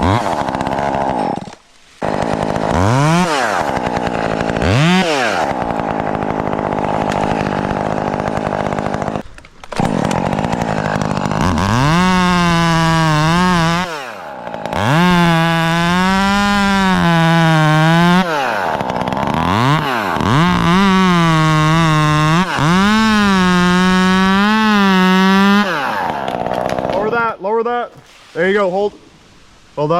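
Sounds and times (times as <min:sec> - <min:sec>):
chainsaw revving and idling: 0:00.0 - 0:27.3.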